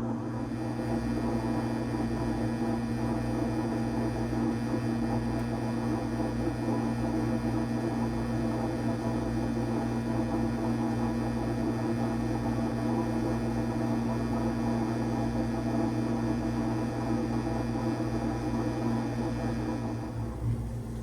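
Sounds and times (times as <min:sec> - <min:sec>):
dishwasher running: 0:19.9 - 0:21.0.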